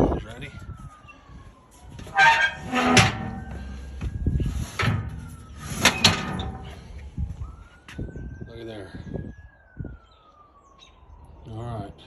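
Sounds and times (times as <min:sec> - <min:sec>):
faint siren wailing: 0:00.0 - 0:12.0
metal step clanking and rattling: 0:02.1 - 0:04.0, 0:04.7 - 0:06.8.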